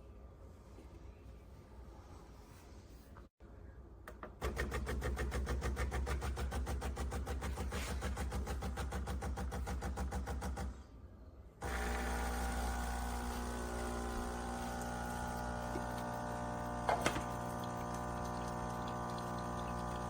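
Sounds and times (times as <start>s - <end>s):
espresso machine humming: 11.6s - 20.0s
espresso machine pulsing: 11.6s - 20.0s.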